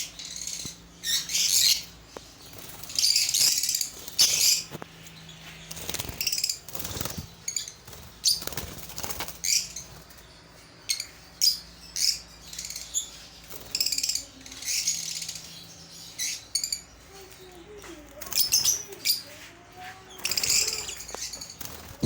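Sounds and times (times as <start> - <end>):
parrots chirping: 0.0 - 10.2, 10.8 - 17.0, 20.1 - 22.0
wings flapping: 5.6 - 10.2, 20.2 - 22.0.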